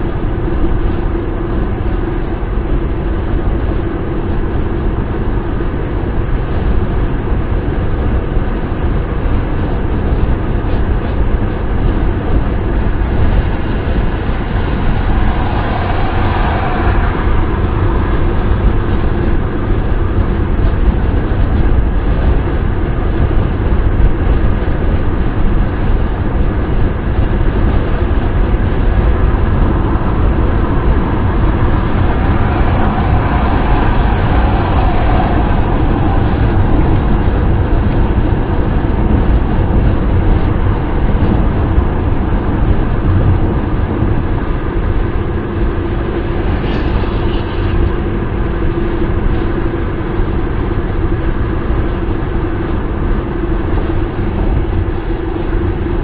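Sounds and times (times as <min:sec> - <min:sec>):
car road noise rumble: 0:00.0 - 0:56.0
wind rushing hiss: 0:12.4 - 0:21.4, 0:26.1 - 0:49.8.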